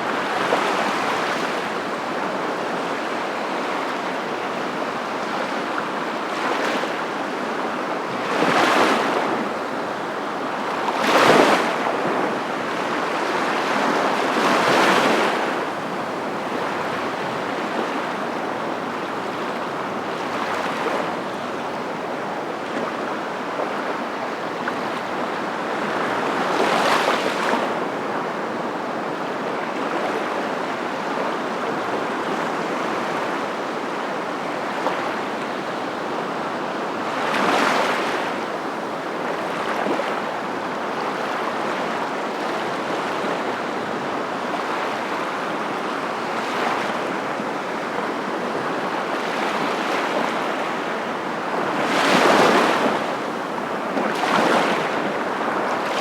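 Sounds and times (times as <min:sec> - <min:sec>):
waves breaking: 0:42.6 - 0:56.0.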